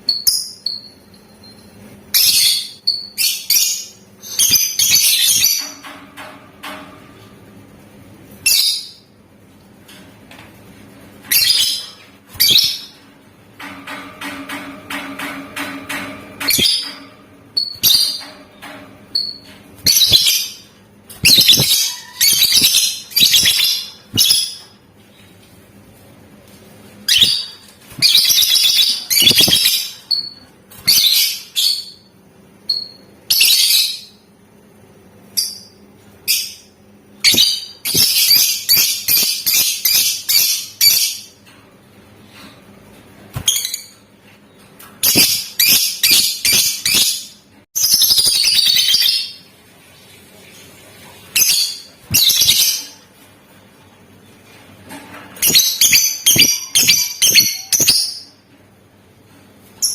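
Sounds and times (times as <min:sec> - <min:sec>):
bird chirps: 0:21.2 - 0:24.6, 0:27.1 - 0:32.1.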